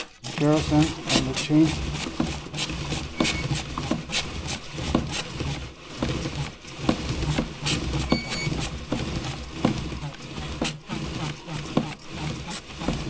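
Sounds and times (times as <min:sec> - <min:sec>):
spray bottle squirting: 0:00.0 - 0:05.3.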